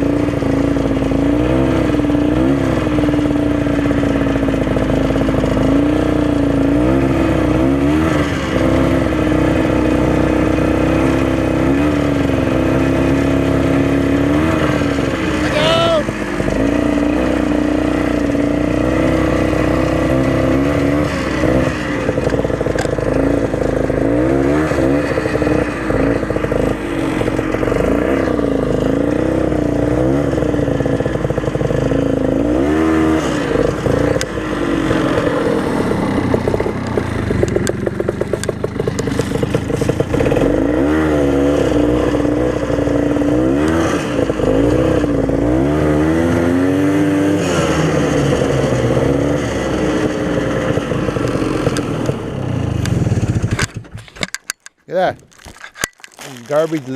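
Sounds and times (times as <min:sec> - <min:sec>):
snowmobile engine revving: 0:00.0 - 0:54.2, 0:56.2 - 0:56.9.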